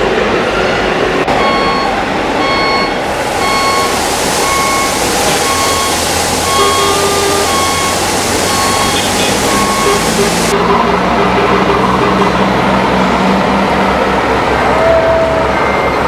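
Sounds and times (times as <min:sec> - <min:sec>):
background hiss: 0:01.3 - 0:10.5
reversing alarm beeps: 0:01.3 - 0:12.3.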